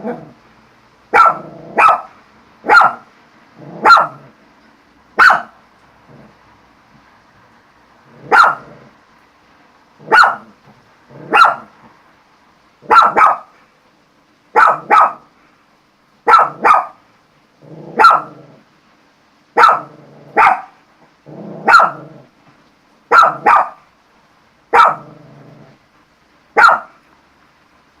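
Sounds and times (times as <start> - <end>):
dog growling: 0.0 - 0.4, 1.2 - 2.1, 3.6 - 4.4, 6.0 - 6.4, 8.0 - 9.0, 10.0 - 11.8, 17.6 - 18.7, 19.6 - 22.3, 24.8 - 25.8
dog barking: 1.1 - 3.1, 3.7 - 4.3, 5.2 - 5.6, 8.2 - 8.8, 10.0 - 10.6, 11.2 - 11.8, 12.8 - 13.6, 14.5 - 15.3, 16.2 - 17.0, 17.9 - 18.4, 19.6 - 20.8, 21.6 - 22.1, 23.1 - 23.8, 24.7 - 25.2, 26.6 - 27.0.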